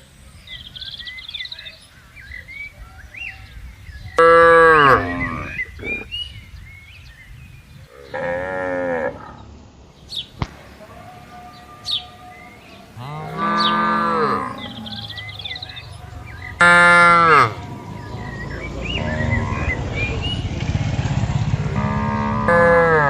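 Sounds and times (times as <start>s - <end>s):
cattle mooing: 4.2s - 6.1s, 7.9s - 9.4s, 10.9s - 18.4s, 21.6s - 23.0s.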